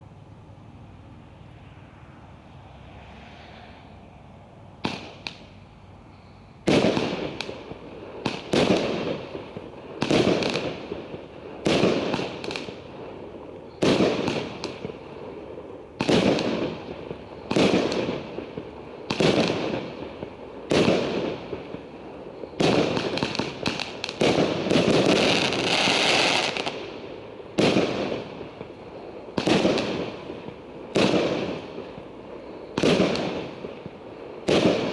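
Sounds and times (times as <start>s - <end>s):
firework shots banging: 4.8s - 5.6s, 6.6s - 34.9s.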